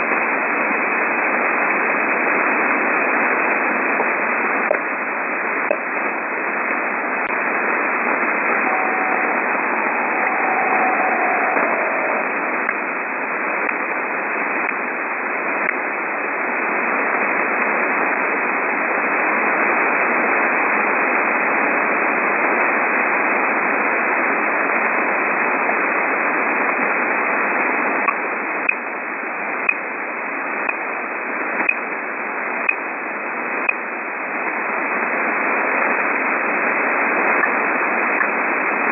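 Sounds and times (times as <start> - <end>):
radio receiver hiss: 0.0 - 38.9
short radio pips: 5.6 - 14.8.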